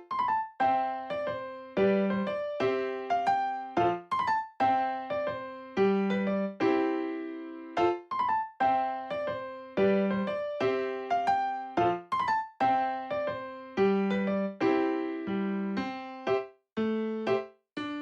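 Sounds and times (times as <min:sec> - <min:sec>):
gentle piano tune: 0:00.0 - 0:18.0.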